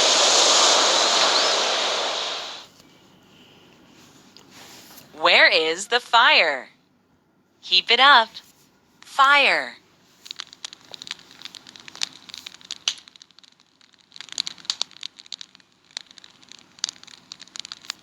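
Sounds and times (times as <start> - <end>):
fire crackling: 0.0 - 2.7, 10.1 - 18.0.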